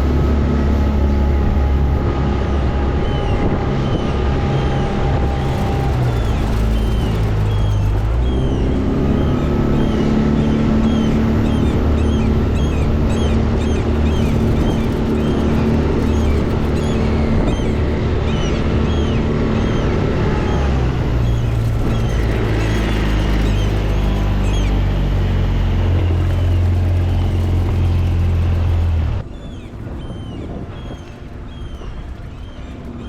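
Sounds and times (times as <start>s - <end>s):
seabirds calling: 3.1s - 33.0s
outboard motor running: 4.4s - 33.0s.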